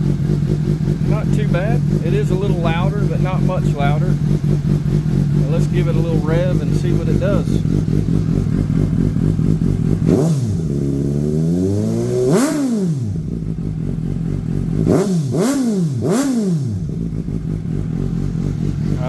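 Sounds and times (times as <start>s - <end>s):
motorcycle engine idling and revving: 0.0s - 19.0s.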